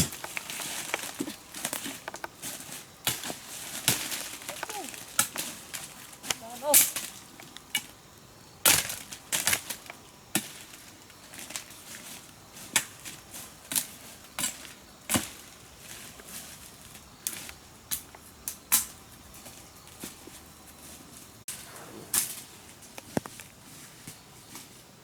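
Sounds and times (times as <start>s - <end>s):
sharp knocks and cracks: 0.0s - 8.0s, 8.6s - 11.7s.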